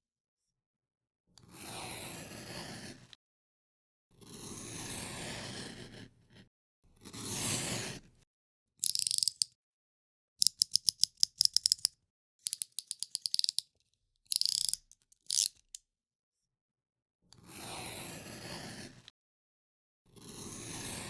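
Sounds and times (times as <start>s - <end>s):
utility knife slider ratcheting clicks: 8.8s - 9.5s, 10.4s - 11.9s, 12.5s - 13.6s, 14.3s - 15.8s.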